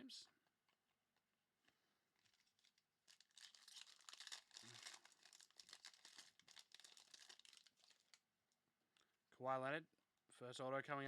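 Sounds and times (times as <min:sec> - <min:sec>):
foil wrapper tearing and crinkling: 0:02.2 - 0:08.2.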